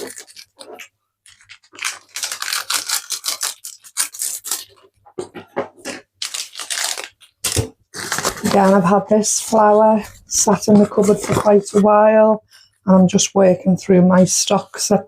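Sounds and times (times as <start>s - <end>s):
food packaging crinkling: 0.0s - 11.9s.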